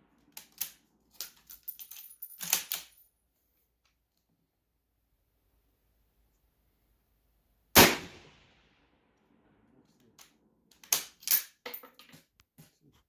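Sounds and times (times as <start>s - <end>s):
rifle shot: 7.8s - 8.8s.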